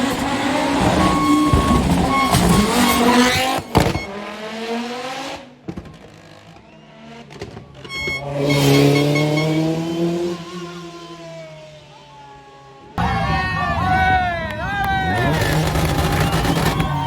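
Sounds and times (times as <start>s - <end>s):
car engine at full throttle: 0.0s - 11.8s, 13.0s - 17.0s
rally car passing: 13.0s - 17.0s.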